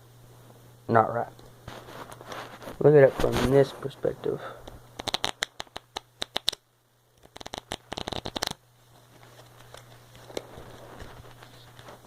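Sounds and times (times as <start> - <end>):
playing cards riffled: 5.0 - 6.6, 7.2 - 8.6.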